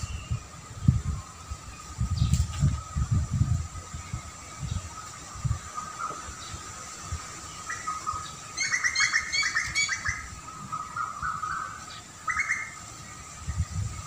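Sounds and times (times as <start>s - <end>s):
songbirds chirping: 0.0s - 14.0s.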